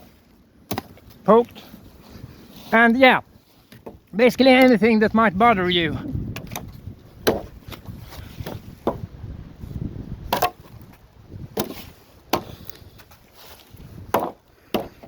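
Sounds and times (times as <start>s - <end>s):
low rustle of branches: 0.0s - 14.7s
wooden stick knocking branches: 0.6s - 1.6s, 3.6s - 5.3s, 6.2s - 9.1s, 10.2s - 15.0s.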